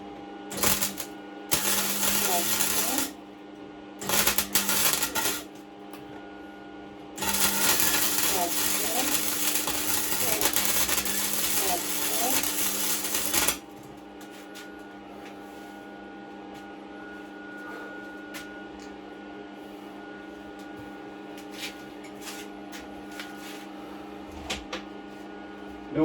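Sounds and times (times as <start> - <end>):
welding arc hiss: 0.5 - 3.2, 4.0 - 5.6, 7.2 - 13.6
welding machine hum: 0.5 - 3.2, 4.0 - 6.2, 7.0 - 14.7.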